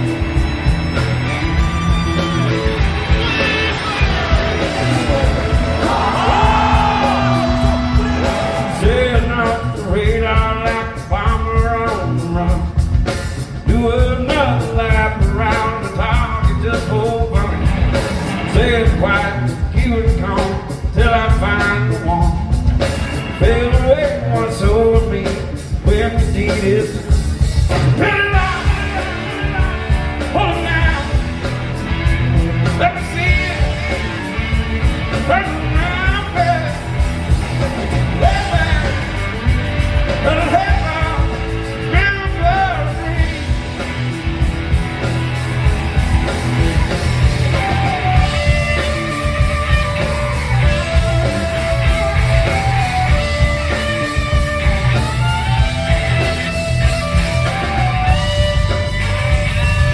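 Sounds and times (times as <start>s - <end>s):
drum beat: 0.0s - 19.2s, 24.7s - 59.9s
electric guitar: 0.0s - 59.9s
person singing: 2.2s - 12.7s, 38.2s - 39.1s.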